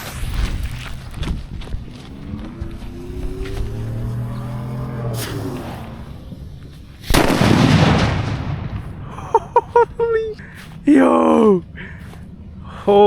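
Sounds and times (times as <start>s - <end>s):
firecracker exploding: 7.0s - 9.3s.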